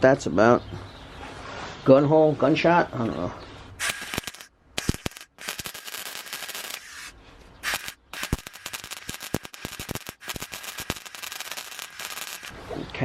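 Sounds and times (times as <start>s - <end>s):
welding arc crackling and popping: 3.8s - 12.6s.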